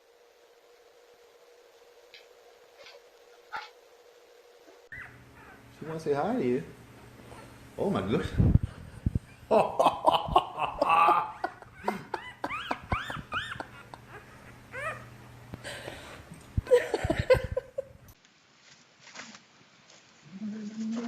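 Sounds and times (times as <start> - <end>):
people laughing: 9.5 - 14.3, 16.6 - 17.9.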